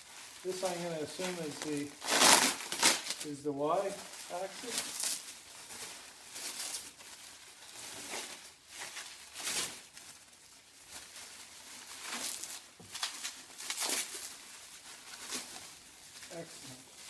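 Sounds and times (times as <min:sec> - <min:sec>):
packaging rustling and crinkling: 0:00.0 - 0:17.0.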